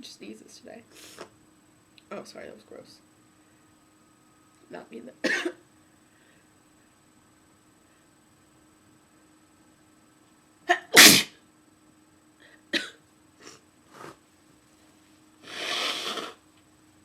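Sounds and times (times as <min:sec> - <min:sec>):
woman sneezing: 0:10.7 - 0:11.4.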